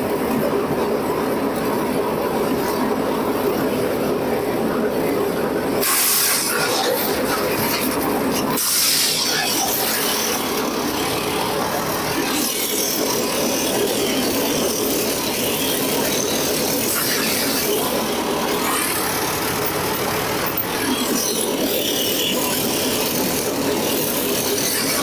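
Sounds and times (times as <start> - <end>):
wood chipper engine running: 5.8 - 25.0.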